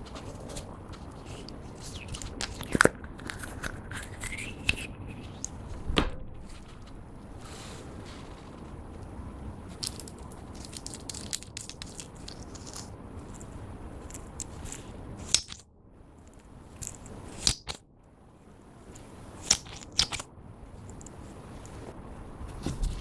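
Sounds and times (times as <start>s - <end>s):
slime crackling and clicking: 9.8s - 12.9s, 19.4s - 20.3s
sharp slime snaps: 15.2s - 15.6s, 19.4s - 20.3s.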